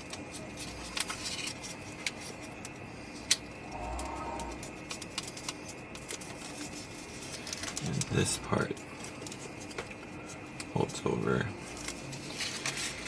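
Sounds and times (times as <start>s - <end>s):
card stock tapping and rustling: 0.0s - 3.4s
soft low cooing call: 3.6s - 4.7s.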